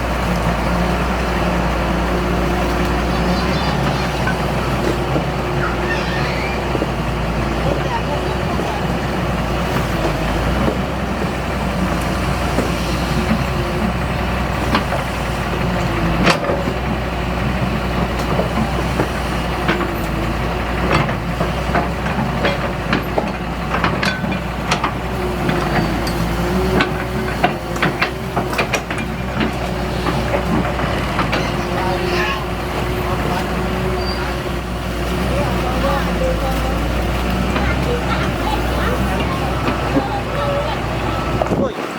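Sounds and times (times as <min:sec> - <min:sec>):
heavy diesel engine running: 0:00.0 - 0:41.9
sharp knocks and clanks: 0:18.0 - 0:40.2.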